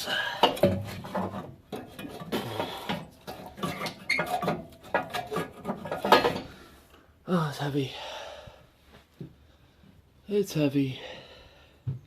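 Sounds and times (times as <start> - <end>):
metallic clanking and scraping: 0.2 - 6.7.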